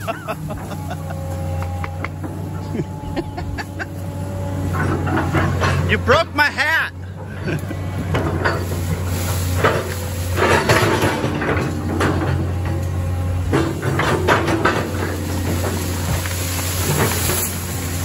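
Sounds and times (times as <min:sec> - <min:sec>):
engine running steadily: 0:00.0 - 0:18.0
metallic clanks and knocks: 0:00.4 - 0:02.9, 0:04.6 - 0:06.0, 0:08.0 - 0:18.0.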